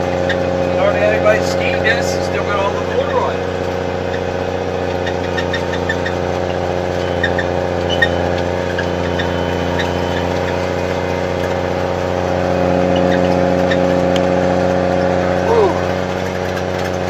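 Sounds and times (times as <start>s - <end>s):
snowcat engine running: 0.0s - 17.0s
faint ticks and squeaks: 4.1s - 11.7s, 12.9s - 14.2s.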